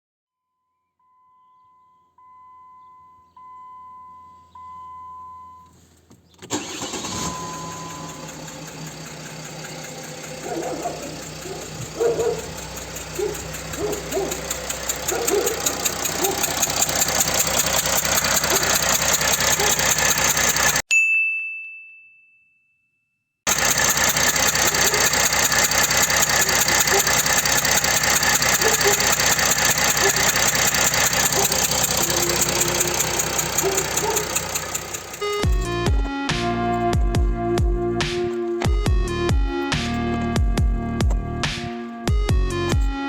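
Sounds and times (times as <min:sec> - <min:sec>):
short beeps: 0:01.0 - 0:05.7, 0:07.0 - 0:08.3
diesel engine starting and idling: 0:03.4 - 0:20.8, 0:23.5 - 0:43.0
fast even engine ticking: 0:06.5 - 0:20.8, 0:23.5 - 0:43.0.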